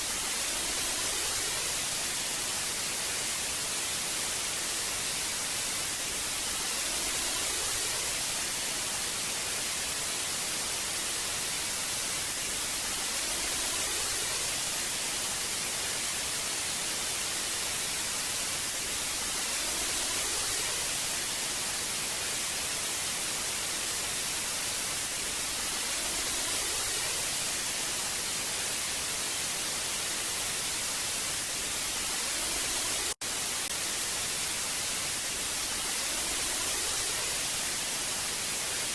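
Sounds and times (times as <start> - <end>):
television static hiss: 0.0 - 38.9.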